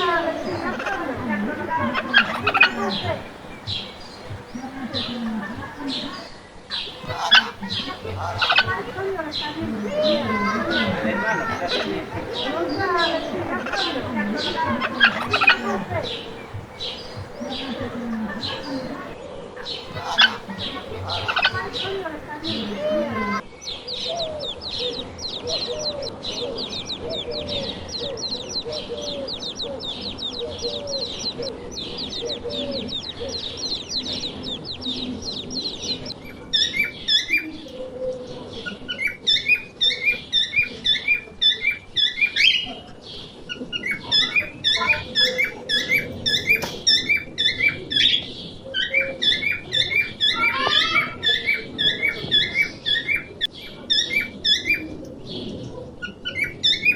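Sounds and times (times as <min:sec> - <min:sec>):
small birds chirping: 0:00.0 - 0:23.4.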